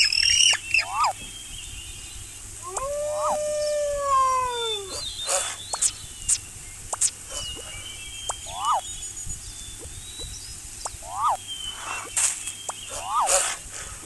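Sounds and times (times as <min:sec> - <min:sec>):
rising and falling animal calls: 0:00.0 - 0:01.2, 0:02.6 - 0:05.9, 0:08.3 - 0:08.8, 0:10.9 - 0:12.1, 0:12.9 - 0:13.6
bursts of hiss: 0:03.8 - 0:14.0.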